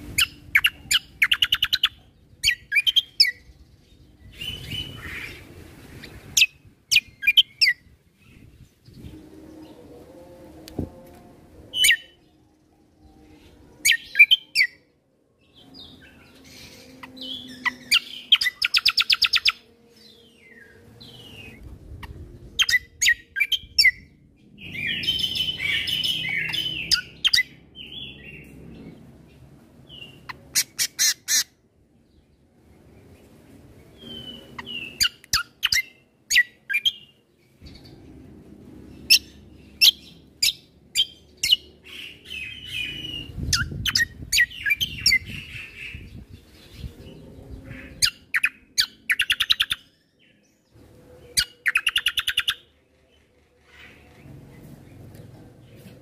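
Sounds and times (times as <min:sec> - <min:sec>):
songbird trilling and chattering: 0:00.2 - 0:03.5, 0:39.1 - 0:49.9.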